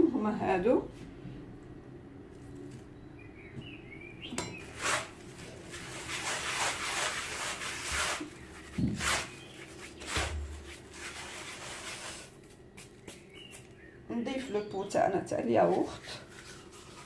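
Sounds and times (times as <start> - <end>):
hands rubbing grainy semolina: 4.7 - 13.7, 15.7 - 17.0.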